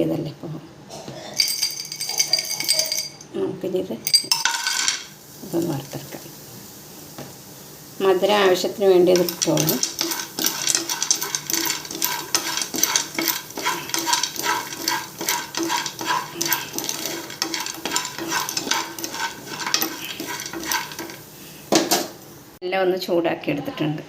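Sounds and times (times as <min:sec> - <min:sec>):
spoon scraping in a pan: 0:08.9 - 0:22.2.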